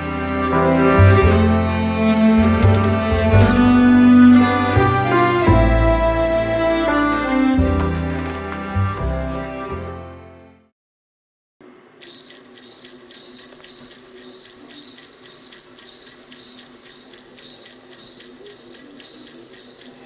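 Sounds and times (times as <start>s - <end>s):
background music: 0.0s - 10.6s
music with jingle bells: 12.0s - 20.0s.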